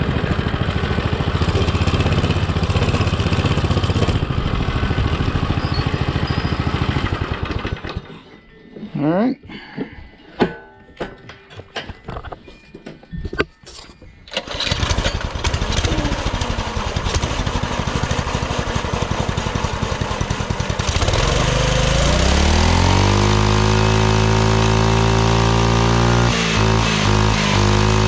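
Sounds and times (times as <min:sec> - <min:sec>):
mini bike engine idling and revving: 0:00.0 - 0:08.1, 0:14.3 - 0:28.0.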